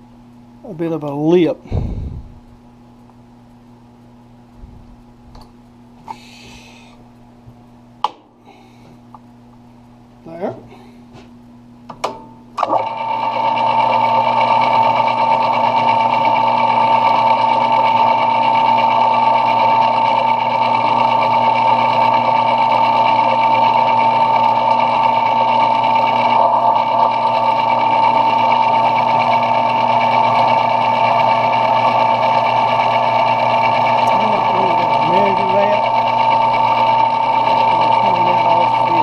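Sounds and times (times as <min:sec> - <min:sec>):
metal lathe whining: 0:12.6 - 0:39.0.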